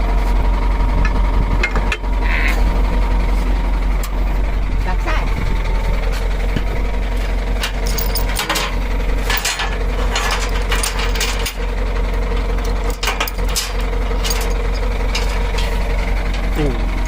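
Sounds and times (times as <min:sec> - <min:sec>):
tractor engine running: 0:00.0 - 0:17.0
knocks and rattles: 0:07.5 - 0:17.0.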